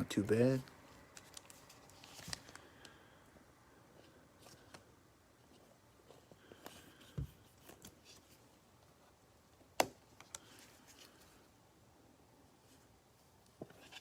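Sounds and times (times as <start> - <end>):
cards rustling: 0.2 - 3.0, 10.0 - 11.5.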